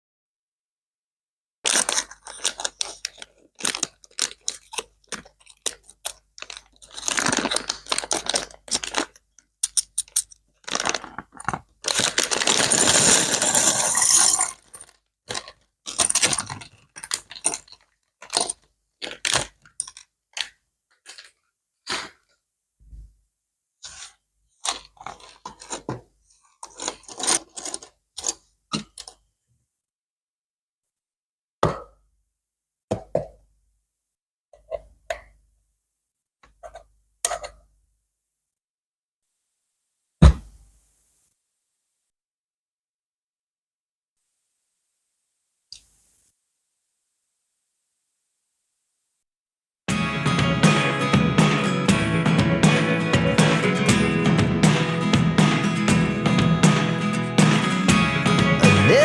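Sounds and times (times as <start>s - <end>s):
plastic parts clicking and rattling: 1.6s - 13.3s, 14.6s - 22.1s, 24.6s - 29.2s
packaging rustle: 1.7s - 9.2s, 10.6s - 20.0s, 24.6s - 28.0s.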